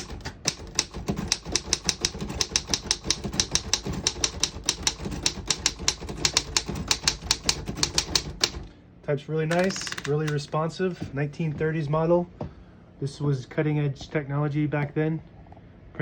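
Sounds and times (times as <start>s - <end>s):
manual typewriter clacking: 0.0s - 8.7s, 9.5s - 10.4s.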